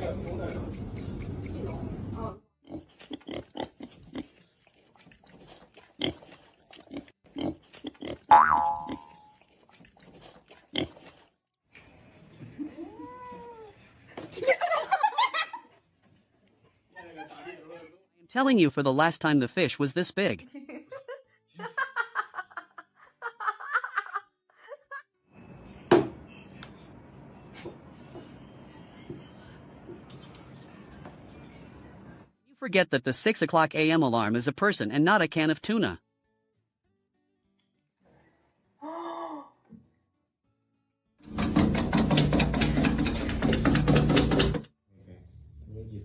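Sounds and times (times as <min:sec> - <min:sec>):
background noise: 0:07.3 - 0:36.0.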